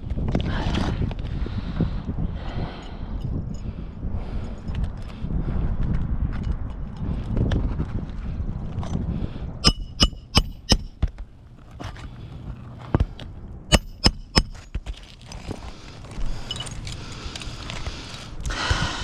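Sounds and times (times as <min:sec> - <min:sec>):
hard metallic knocks: 0:09.6 - 0:11.1, 0:13.7 - 0:14.6.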